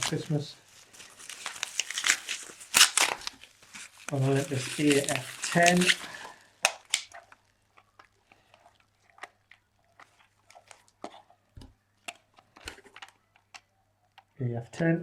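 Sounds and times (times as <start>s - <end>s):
hands handling plastic camera: 0.0s - 14.4s.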